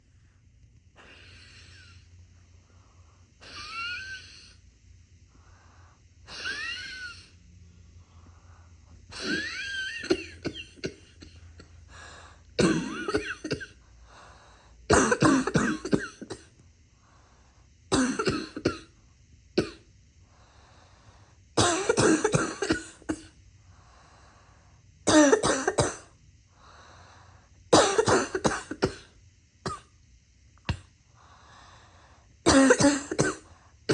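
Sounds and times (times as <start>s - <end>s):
wheezy breaths: 1.0s - 4.6s, 11.8s - 12.5s, 13.8s - 14.9s, 20.2s - 21.4s, 23.6s - 24.9s, 26.5s - 27.6s, 31.1s - 32.4s
person coughing: 9.2s - 11.8s, 12.6s - 13.8s, 14.9s - 16.5s, 17.9s - 18.9s, 19.6s - 19.8s, 21.6s - 23.3s, 25.1s - 26.1s, 27.7s - 29.1s, 32.5s - 33.9s.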